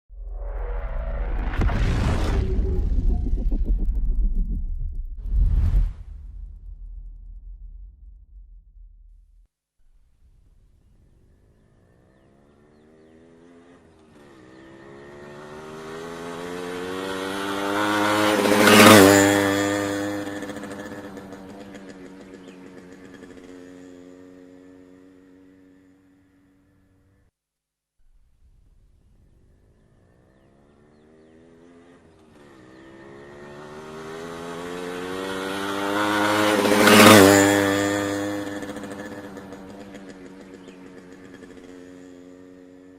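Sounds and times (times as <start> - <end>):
motorbike passing by: 10.7 - 27.3, 29.0 - 42.9.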